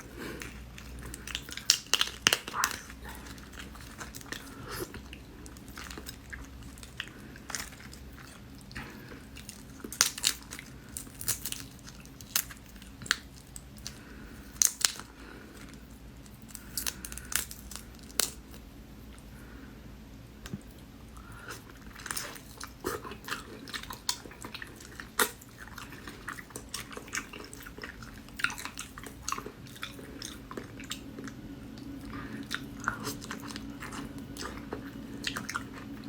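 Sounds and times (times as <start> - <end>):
wet chewing and slurping: 0.0 - 18.4, 21.3 - 36.0
crackling smacks: 0.2 - 4.4.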